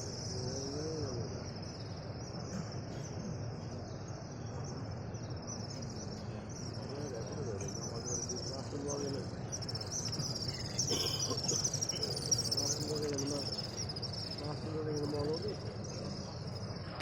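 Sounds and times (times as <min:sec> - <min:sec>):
small birds chirping: 0:00.0 - 0:17.0
crowd murmur: 0:06.1 - 0:13.8.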